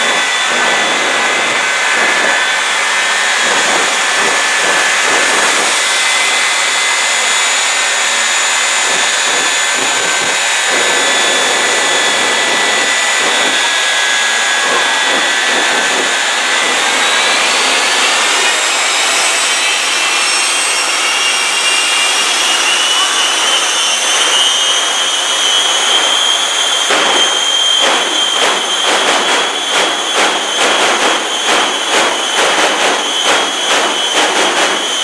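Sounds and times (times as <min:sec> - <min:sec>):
jet engines roaring and whining: 0:00.0 - 0:35.0.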